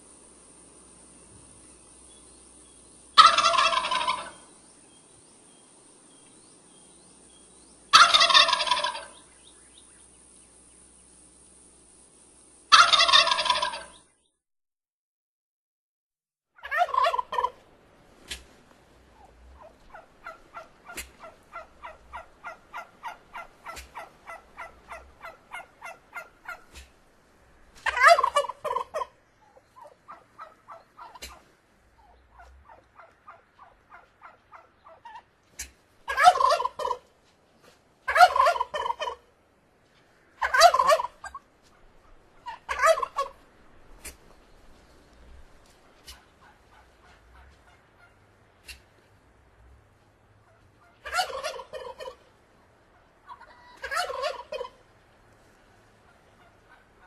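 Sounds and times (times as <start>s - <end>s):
turkeys calling softly: 0.0s - 11.6s, 12.7s - 14.2s, 16.6s - 57.0s
turkey gobbles: 3.1s - 4.5s, 7.9s - 9.3s, 12.7s - 14.0s, 16.6s - 17.6s, 19.1s - 27.0s, 27.8s - 37.1s, 38.0s - 39.3s, 40.4s - 44.3s, 45.2s - 48.9s, 50.4s - 52.3s, 52.9s - 54.9s, 56.0s - 57.0s.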